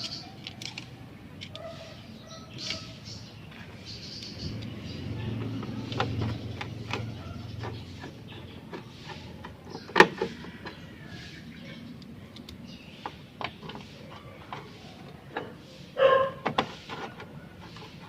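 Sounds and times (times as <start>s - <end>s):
plastic parts clicking and knocking: 0.0s - 1.6s, 5.4s - 10.8s.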